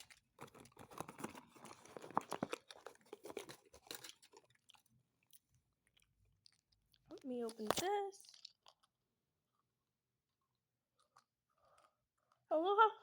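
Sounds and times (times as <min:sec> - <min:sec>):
chocolate crunching: 0:00.0 - 0:09.1.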